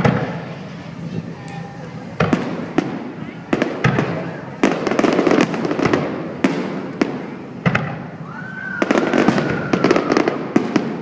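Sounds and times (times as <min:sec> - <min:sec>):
fireworks bangs: 0:00.0 - 0:11.0
crackling pops: 0:01.5 - 0:08.0
high firework whistle: 0:07.9 - 0:11.0.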